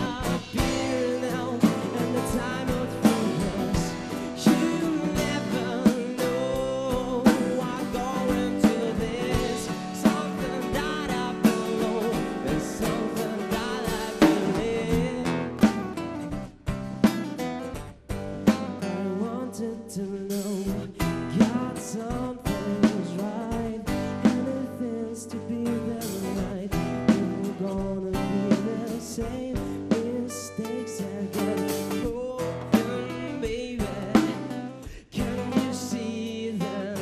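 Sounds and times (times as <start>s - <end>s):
person singing: 0.0s - 16.0s, 18.6s - 37.0s
live band playing: 0.0s - 19.0s, 26.0s - 30.1s.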